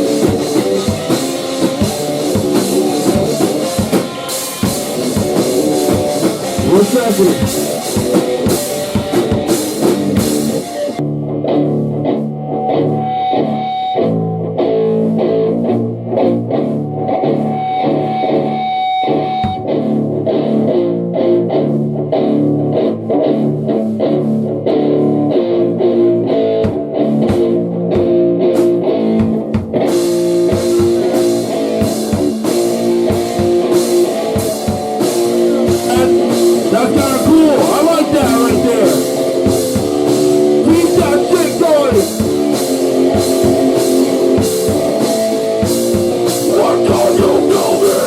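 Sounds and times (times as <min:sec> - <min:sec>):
drums and cymbals: 0:00.0 - 0:11.0, 0:18.6 - 0:19.8, 0:26.5 - 0:48.0
electric guitar riff: 0:00.0 - 0:48.0.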